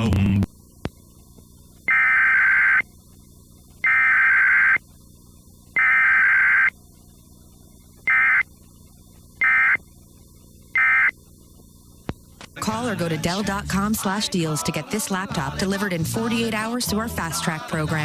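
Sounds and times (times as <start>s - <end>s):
faint hum: 0.0s - 18.0s
data tone bursts: 1.9s - 3.0s, 3.8s - 4.9s, 5.7s - 6.8s, 8.0s - 8.6s, 9.4s - 9.9s, 10.7s - 11.2s.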